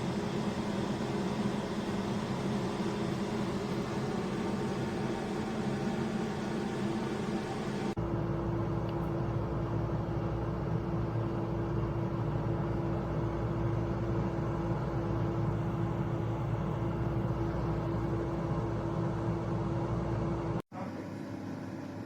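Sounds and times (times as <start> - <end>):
air fryer fan hum: 0.0 - 22.0.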